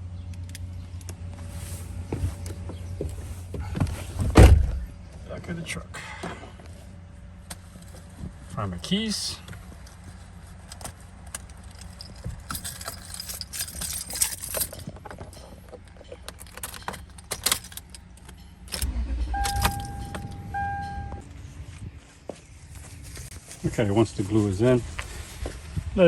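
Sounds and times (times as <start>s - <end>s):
keys jangling: 11.6s - 20.5s
low rumble: 18.7s - 23.4s
electronic beep tone: 19.0s - 21.3s.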